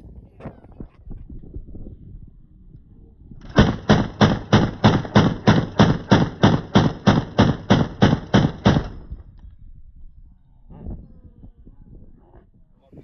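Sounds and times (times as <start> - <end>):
gunshots in rapid succession: 3.4 - 9.2.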